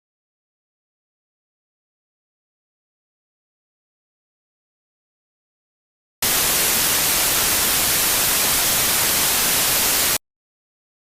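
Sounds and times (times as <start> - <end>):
loud static hiss: 6.2 - 10.2.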